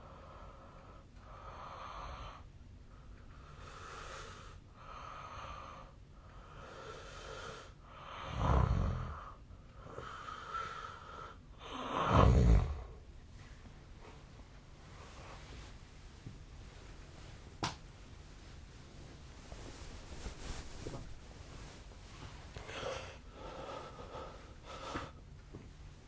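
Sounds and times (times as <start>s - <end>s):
man snoring loudly: 8.1s - 9.3s, 11.6s - 12.9s.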